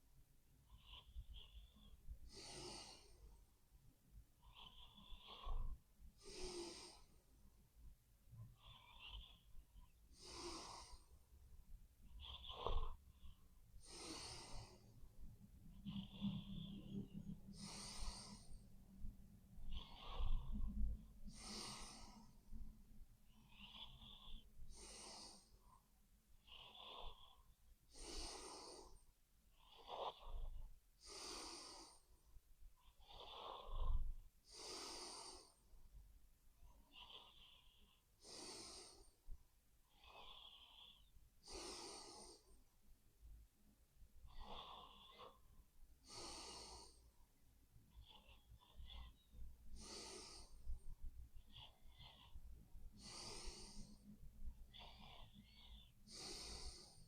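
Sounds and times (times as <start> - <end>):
person snoring: 13.8 - 14.9, 17.5 - 18.6, 21.3 - 22.2, 49.8 - 50.6, 53.0 - 54.0, 54.7 - 57.0.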